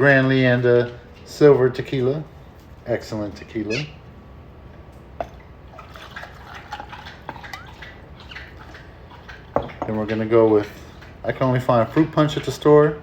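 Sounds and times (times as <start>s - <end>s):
liquid pouring into glass: 5.2s - 10.1s.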